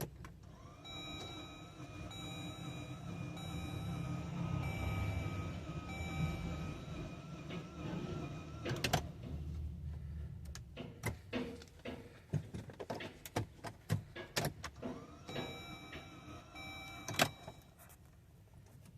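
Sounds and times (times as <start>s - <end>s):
warbling electronic warning tone: 0.8s - 8.6s.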